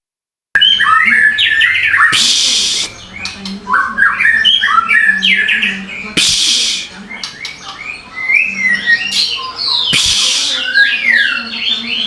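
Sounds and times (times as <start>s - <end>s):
songbird whistling notes: 0.6s - 12.0s
bird harsh rasp: 2.0s - 3.0s, 9.8s - 10.9s.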